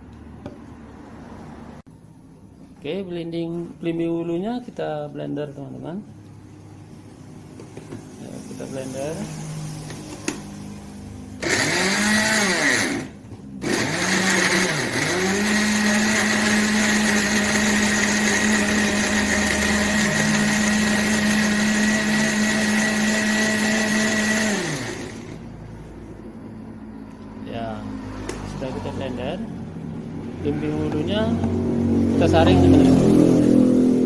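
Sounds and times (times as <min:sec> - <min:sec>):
electric blender chopping: 0:11.4 - 0:25.4.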